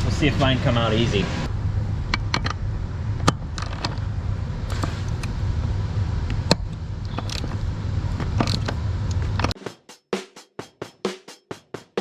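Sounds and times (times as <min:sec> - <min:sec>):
drum music: 0:09.5 - 0:12.0.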